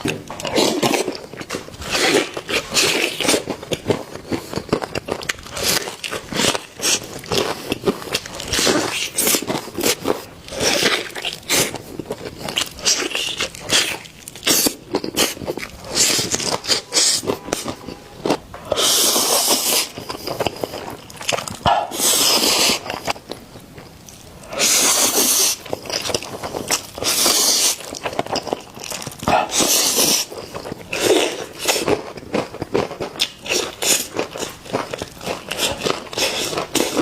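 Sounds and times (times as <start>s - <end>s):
bones cracking and clicking: 0.0s - 21.9s, 22.6s - 37.0s
chicken bones crunching: 25.2s - 37.0s.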